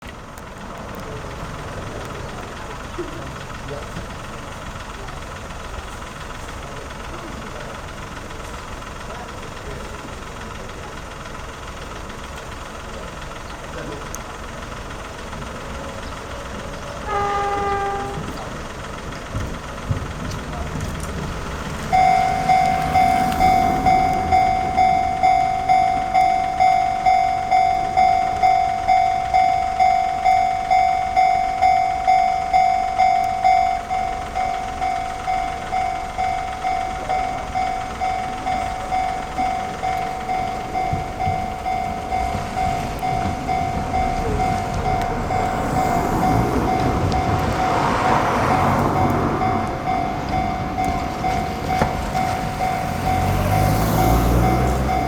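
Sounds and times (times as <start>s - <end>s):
train wheel and rail noise: 0.0s - 55.0s
level-crossing alarm two-tone clang: 21.9s - 55.0s.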